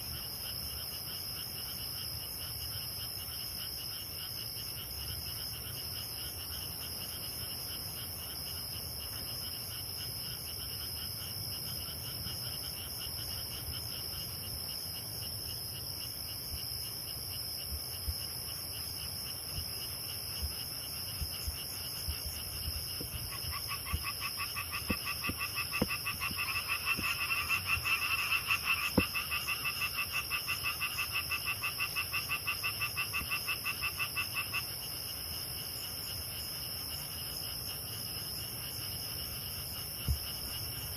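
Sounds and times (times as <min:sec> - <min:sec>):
insects trilling: 0:16.8 - 0:40.9
frogs chorus: 0:18.7 - 0:40.9
frog pulsed croaks: 0:23.0 - 0:34.6.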